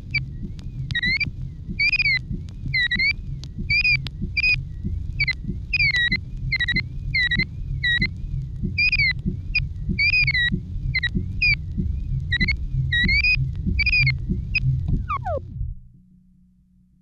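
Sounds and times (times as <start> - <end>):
record clicks: 0.0 - 15.4
low rumble: 0.0 - 16.8
morse code beeps: 1.0 - 3.1, 5.2 - 8.1, 12.3 - 15.4.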